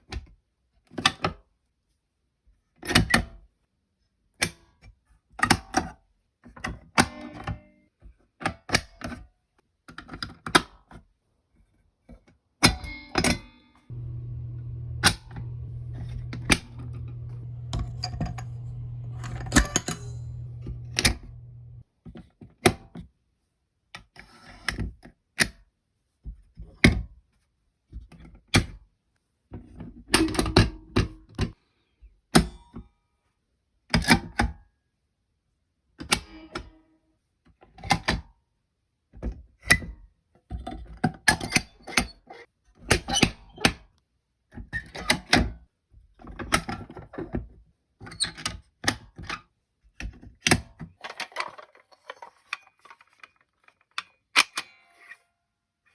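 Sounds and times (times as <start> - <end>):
low steady hum: 13.9 - 21.8.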